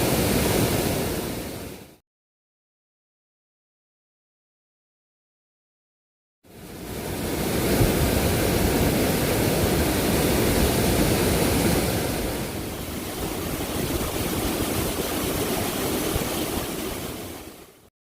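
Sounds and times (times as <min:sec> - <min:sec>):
waterfall rushing: 0:00.0 - 0:02.0, 0:06.5 - 0:17.9.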